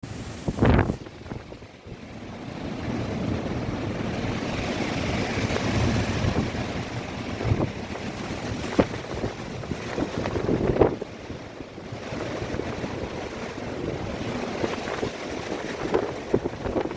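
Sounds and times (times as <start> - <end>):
strong wind gusting: 0.0 - 16.9
wind buffeting microphone: 0.0 - 16.9.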